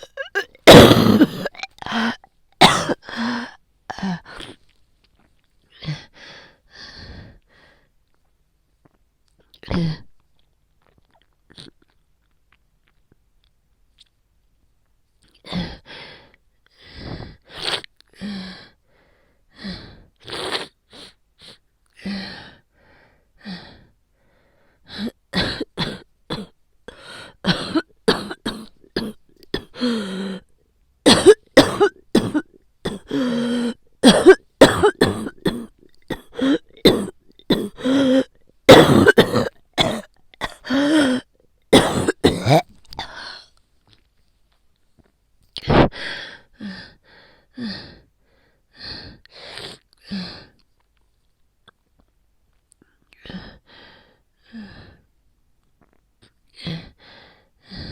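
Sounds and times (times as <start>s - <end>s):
woman coughing: 0.0s - 3.1s, 27.5s - 29.8s, 31.1s - 33.3s, 34.0s - 41.2s, 41.8s - 43.1s.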